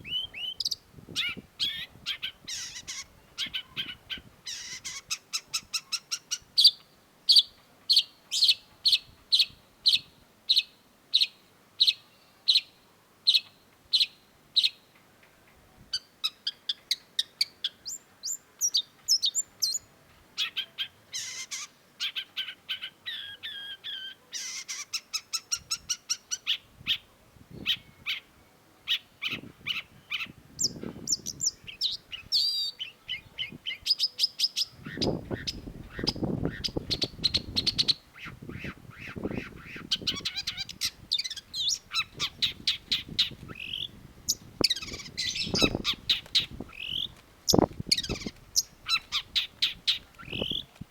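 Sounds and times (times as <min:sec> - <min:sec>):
shrike calling and singing: 0:00.0 - 0:14.9, 0:16.0 - 0:50.8.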